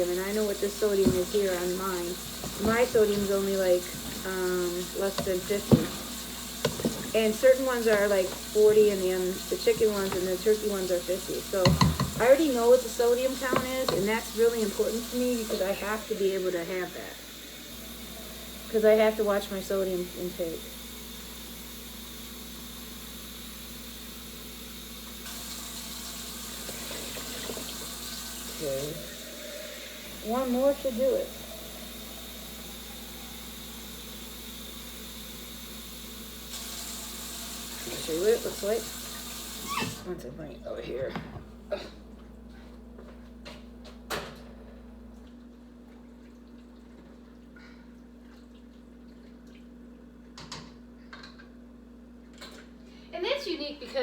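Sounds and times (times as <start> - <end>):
water running from a tap: 0.0 - 40.1
low electrical hum: 0.0 - 54.0
container knocking: 11.6 - 12.3.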